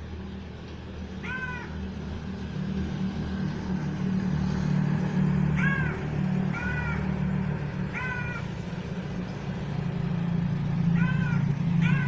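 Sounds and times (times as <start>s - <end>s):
crow cawing: 1.2s - 1.8s, 5.5s - 7.2s, 7.9s - 8.5s, 10.9s - 12.0s.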